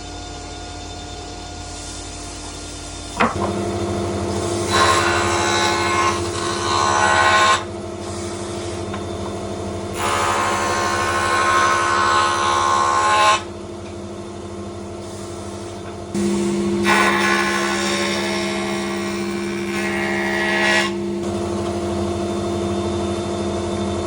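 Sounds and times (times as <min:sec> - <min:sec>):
power tool cutting wood: 0:03.2 - 0:09.0, 0:09.9 - 0:13.5, 0:15.3 - 0:22.6
power tool motor humming: 0:16.1 - 0:22.6.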